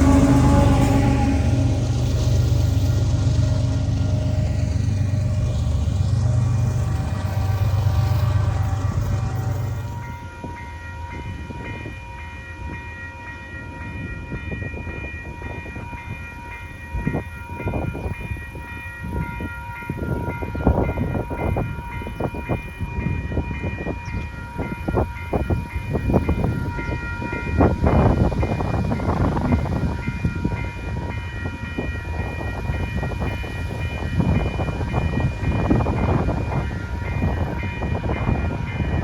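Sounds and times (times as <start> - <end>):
train wheels clacking over rails: 0.0 - 10.2
high ringing tones: 0.0 - 10.3
train horn: 0.0 - 10.6.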